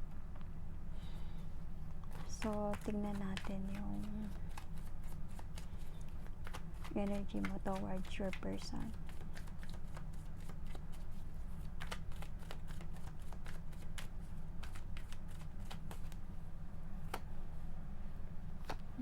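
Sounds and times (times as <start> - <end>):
steady low hum: 0.0 - 19.0
cards shuffled by hand: 1.9 - 16.2.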